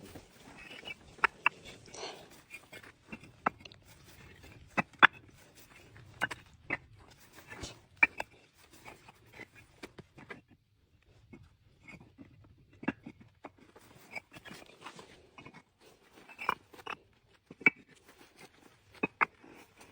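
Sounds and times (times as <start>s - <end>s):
bricks knocking together: 0.0s - 3.6s.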